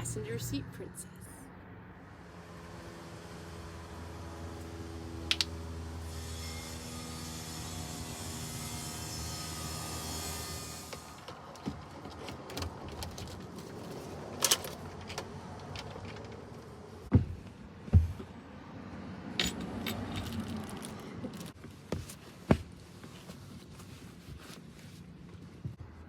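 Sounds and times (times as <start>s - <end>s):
heavy thuds: 17.1s - 18.3s.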